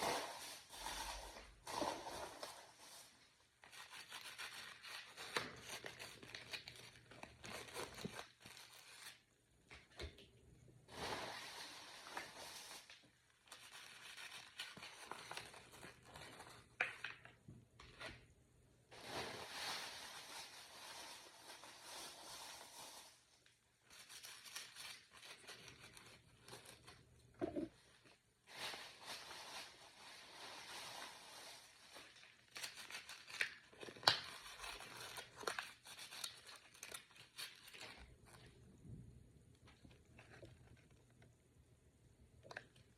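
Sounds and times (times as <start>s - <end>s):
plastic packaging crinkling: 28.5s - 38.5s.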